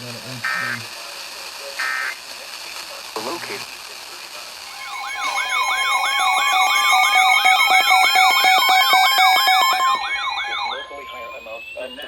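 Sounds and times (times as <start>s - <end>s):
electronic siren alert tone: 4.7s - 12.0s
pulsing steady tone: 4.7s - 12.0s
slowly rising tone: 4.7s - 12.0s.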